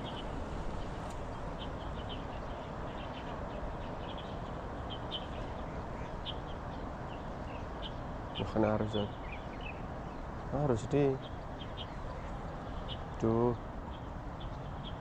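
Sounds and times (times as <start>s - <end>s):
steady rushing noise: 0.0s - 3.8s
small birds chirping: 0.0s - 15.0s.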